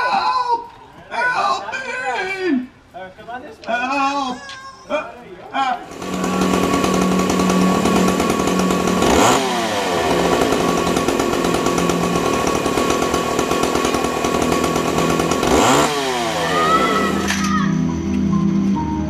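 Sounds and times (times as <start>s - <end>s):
chainsaw engine revving: 5.8s - 17.5s.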